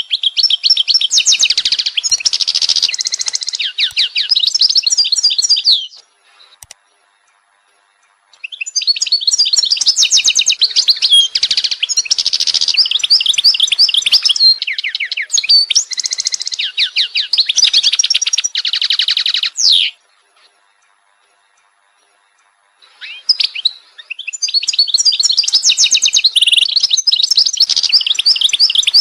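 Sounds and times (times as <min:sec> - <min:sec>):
songbird singing trills and chirps: 0:00.0 - 0:29.0.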